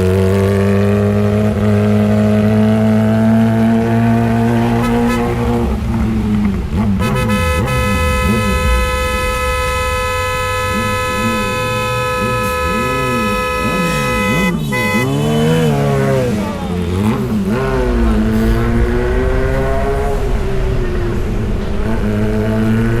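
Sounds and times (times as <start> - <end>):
vehicle engine rising in pitch: 0.0 - 23.0
musical vehicle horn: 4.5 - 5.9, 6.8 - 17.2.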